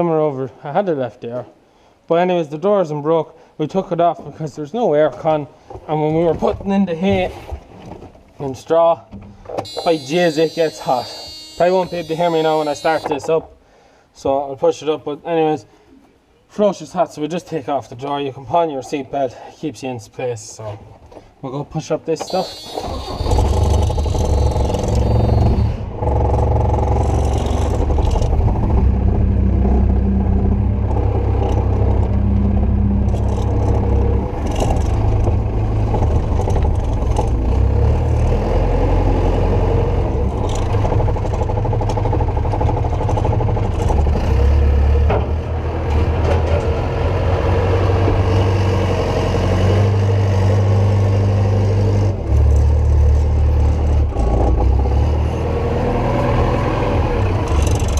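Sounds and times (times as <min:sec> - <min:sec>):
diesel engine starting and running: 0:09.7 - 0:13.1, 0:22.3 - 0:57.9.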